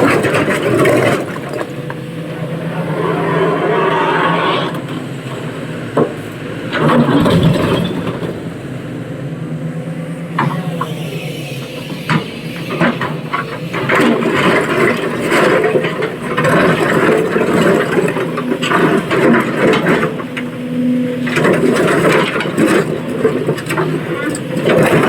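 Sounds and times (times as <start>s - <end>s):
excavator diesel engine under load: 0.0s - 25.0s
knocks and scraping: 10.4s - 25.0s.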